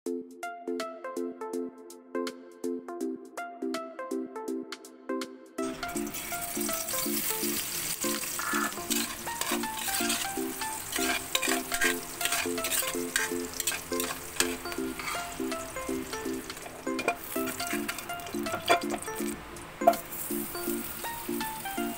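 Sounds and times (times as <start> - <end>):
light background music: 0.1 - 21.9
food sizzling in a pan: 5.6 - 21.9
utensil stirring and scraping: 5.8 - 20.2.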